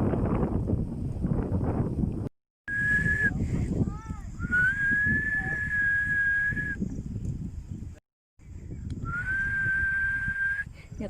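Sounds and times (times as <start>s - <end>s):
wind buffeting microphone: 0.0s - 11.0s
person whistling high notes: 2.7s - 3.4s, 4.4s - 6.8s, 9.0s - 10.7s.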